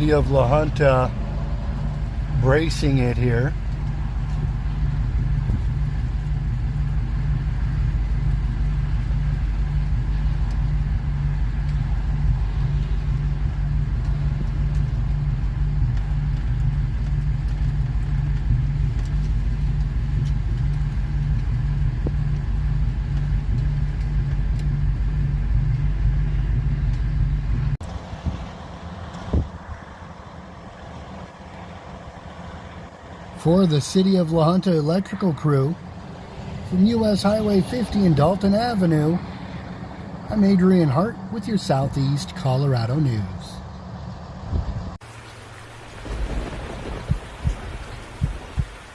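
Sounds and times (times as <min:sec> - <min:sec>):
outdoor noise: 0:00.0 - 0:48.9
wind buffeting microphone: 0:03.5 - 0:25.2, 0:25.8 - 0:29.9, 0:44.4 - 0:45.0, 0:45.8 - 0:48.9.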